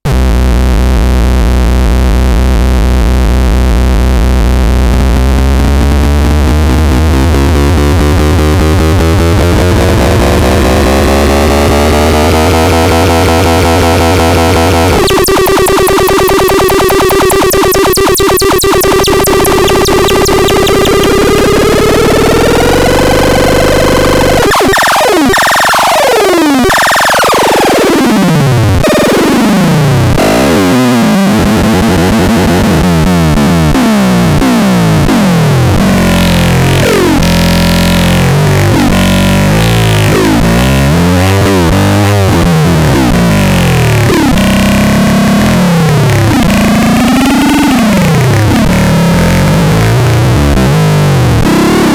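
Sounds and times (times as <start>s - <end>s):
low buzzing synthesizer drone: 0.3s - 26.0s
rapidly pulsing synth tone: 9.6s - 28.0s.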